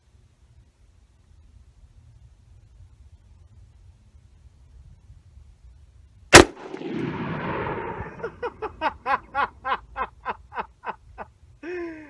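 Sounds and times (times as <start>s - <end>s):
gunshot with echo: 6.4s - 8.3s.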